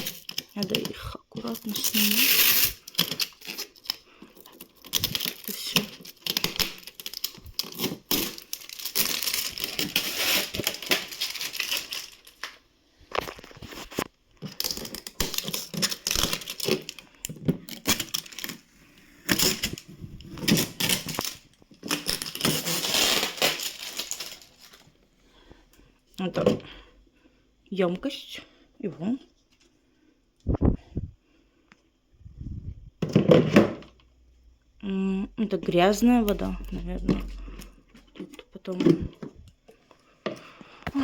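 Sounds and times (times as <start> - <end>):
plastic film peeling and crinkling: 0.0 - 25.0.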